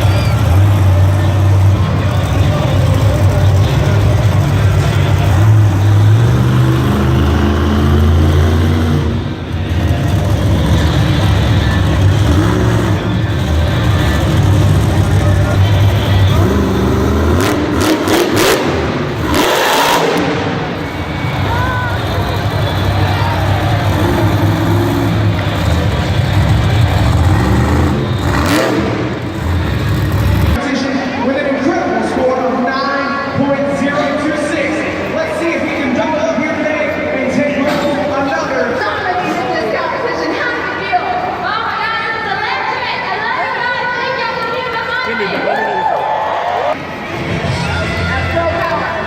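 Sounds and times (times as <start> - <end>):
truck engine revving: 0.0 - 30.6.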